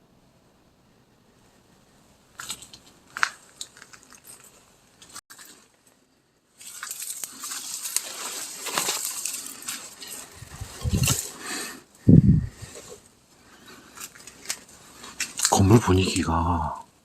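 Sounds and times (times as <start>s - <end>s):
dry debris crunching and crackling: 2.3s - 12.0s, 12.6s - 16.4s.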